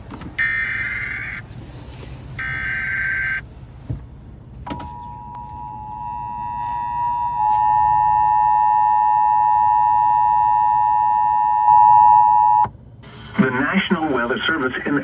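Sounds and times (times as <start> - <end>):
screeching electronic warble: 2.4 - 3.4
two-tone attention signal: 4.8 - 12.6.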